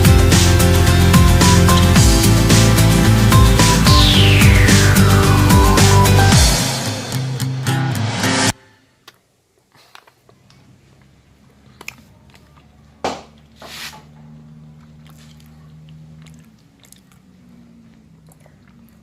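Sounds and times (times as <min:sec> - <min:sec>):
soft chewing: 0:09.0 - 0:19.0.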